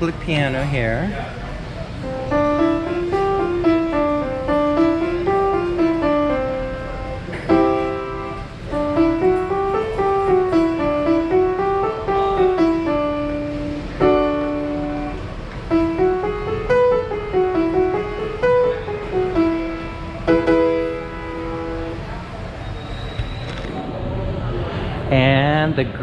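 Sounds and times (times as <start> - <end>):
piano melody over chords: 1.9 - 22.7.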